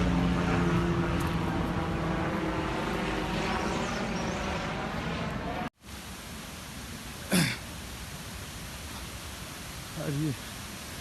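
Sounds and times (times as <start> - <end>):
engine droning: 0.0 - 5.7.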